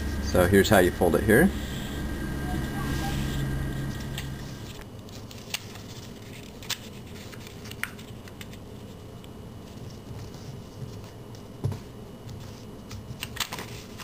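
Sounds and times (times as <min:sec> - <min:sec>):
sharp paper clicks: 0:05.0 - 0:08.6, 0:12.9 - 0:14.0
paper rustling: 0:05.0 - 0:09.0, 0:12.4 - 0:14.0.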